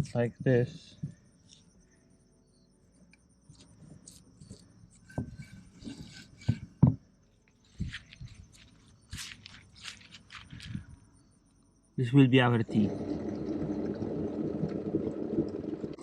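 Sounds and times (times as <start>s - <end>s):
insects chirping: 0.0s - 16.0s
herbs and berries rustling: 7.6s - 11.0s.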